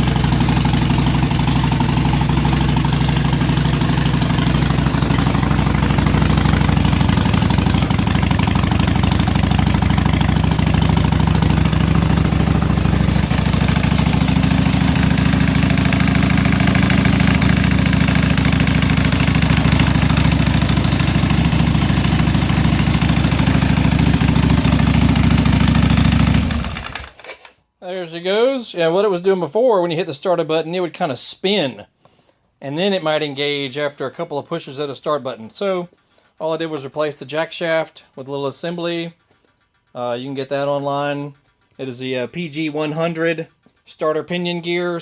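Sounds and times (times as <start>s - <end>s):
motorcycle engine idling: 0.0s - 27.2s, 39.1s - 43.8s.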